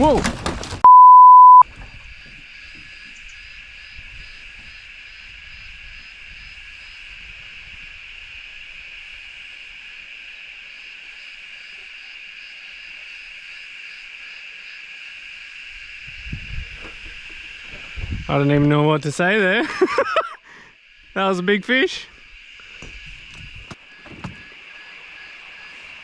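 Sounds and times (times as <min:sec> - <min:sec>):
censor bleep: 0:00.8 - 0:01.6
high-pitched insect chorus: 0:02.0 - 0:26.0.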